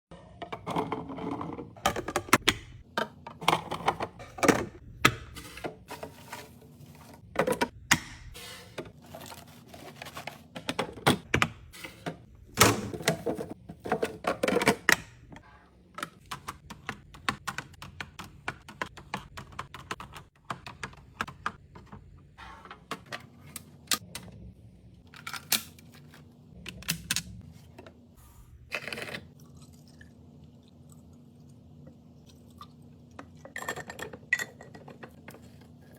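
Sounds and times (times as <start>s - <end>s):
food containers being handled: 8.6s - 15.3s.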